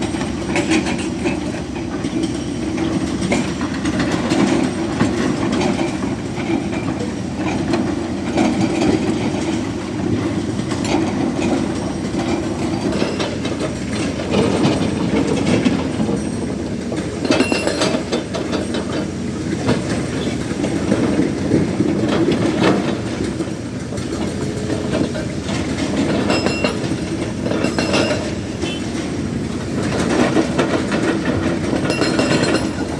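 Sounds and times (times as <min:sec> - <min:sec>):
diesel engine running: 0:00.0 - 0:32.9
hydraulic breaker hammering rock: 0:00.0 - 0:32.9.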